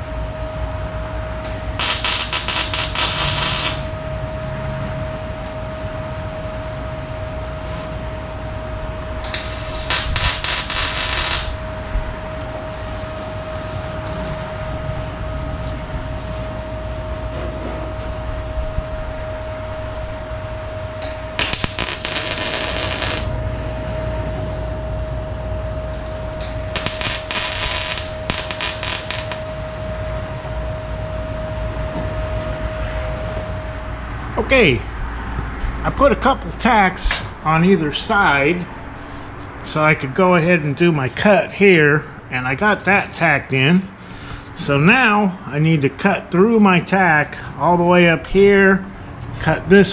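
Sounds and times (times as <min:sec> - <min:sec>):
steady hum: 0:00.0 - 0:49.9
welder crackling: 0:01.5 - 0:04.0, 0:09.2 - 0:11.8, 0:21.0 - 0:23.3, 0:26.4 - 0:30.4.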